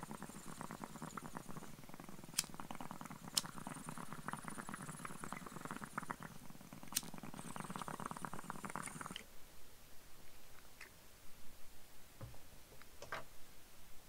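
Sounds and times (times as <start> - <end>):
water bong bubbling: 0.0 - 9.2.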